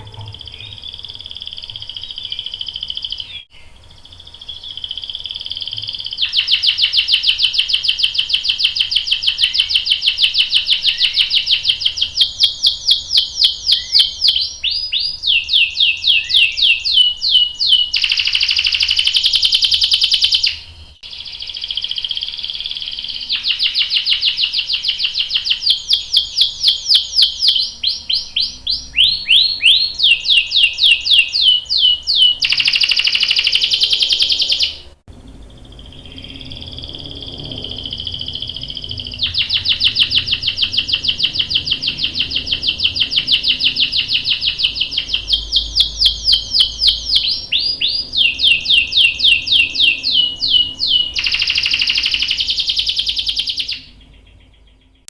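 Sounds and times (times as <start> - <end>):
canary singing: 0.0 - 55.0.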